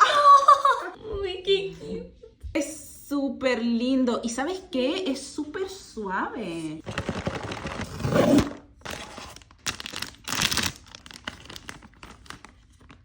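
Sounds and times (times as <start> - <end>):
wrapping crinkling and tearing: 6.8 - 13.0.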